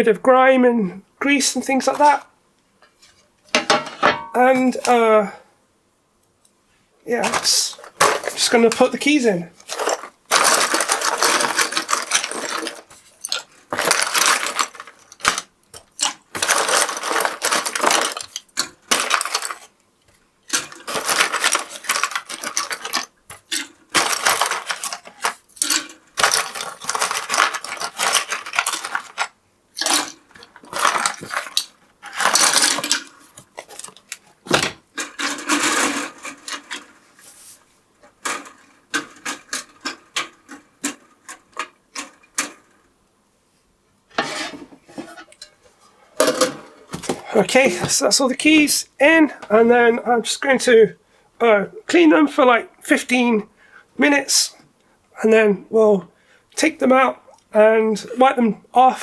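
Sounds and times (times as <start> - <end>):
plastic keycaps clattering into basket: 7.2 - 19.7, 20.5 - 37.0, 38.2 - 42.8.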